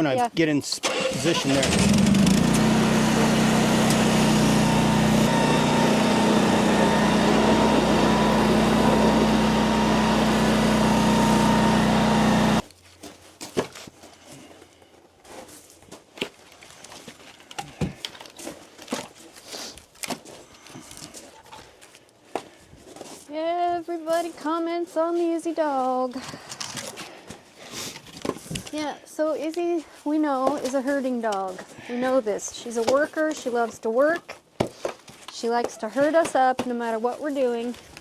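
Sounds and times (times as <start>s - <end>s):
small engine running: 0.8s - 12.6s.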